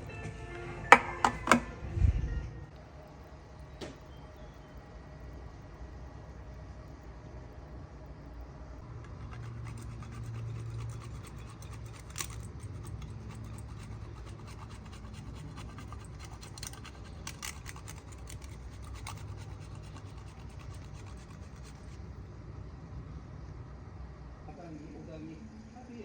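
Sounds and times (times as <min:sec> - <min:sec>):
steady low hum: 0:00.0 - 0:26.0
scratching and rubbing with clicks: 0:09.0 - 0:22.2.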